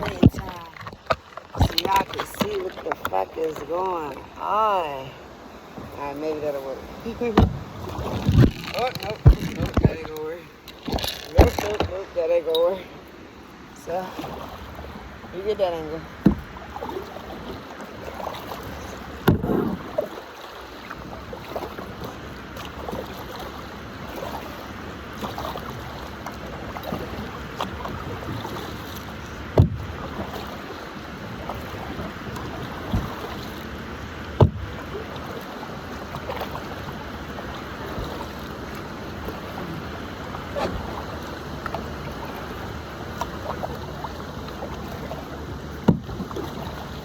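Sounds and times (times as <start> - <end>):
paddle splashing water: 0.0 - 47.0
wind on microphone: 7.1 - 12.0
sharp knocks: 7.4 - 10.1, 19.2 - 19.8.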